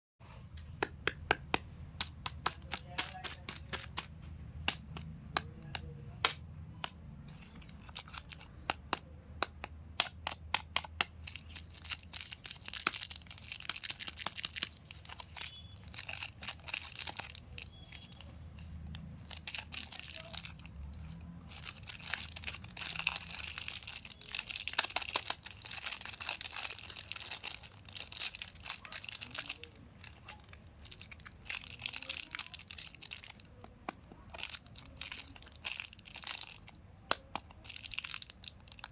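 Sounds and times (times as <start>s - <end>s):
wrappers crinkling and tearing: 7.3s - 8.7s, 11.0s - 38.9s.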